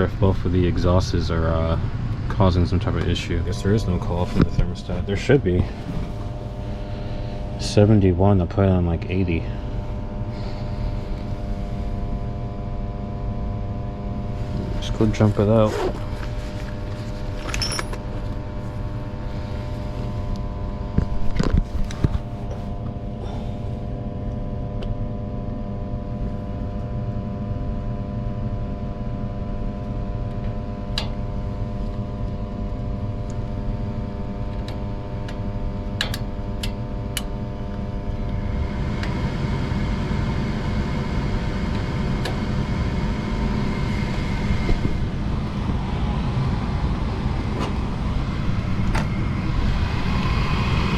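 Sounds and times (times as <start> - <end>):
furnace motor hum: 0.0 - 50.9
rushing noise: 45.3 - 50.9.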